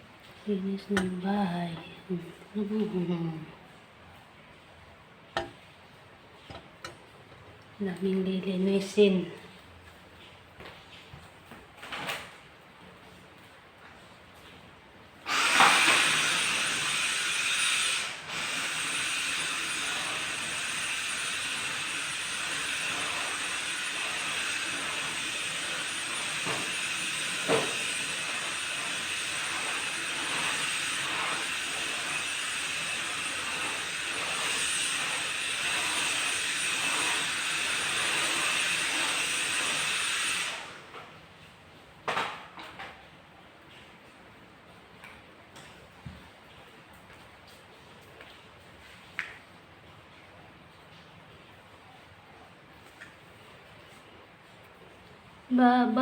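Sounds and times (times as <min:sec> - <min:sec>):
appliance motor with rushing air: 0:15.2 - 0:41.2.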